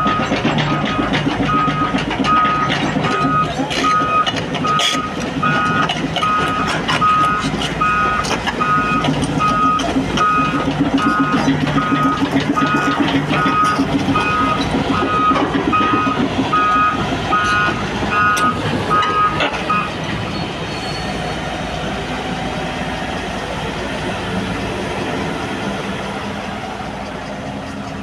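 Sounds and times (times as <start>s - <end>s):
diesel engine running: 0.0s - 28.0s
backup warning alarm beeping: 0.1s - 20.0s.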